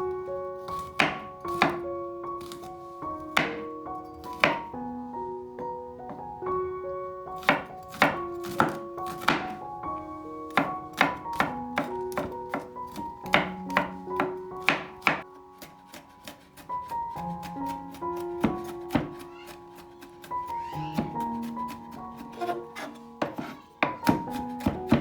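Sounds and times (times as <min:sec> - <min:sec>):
background piano music: 0:00.0 - 0:25.0
knife chopping on cutting board: 0:00.7 - 0:01.8, 0:03.4 - 0:03.6, 0:04.3 - 0:04.6, 0:07.4 - 0:09.6, 0:10.5 - 0:25.0.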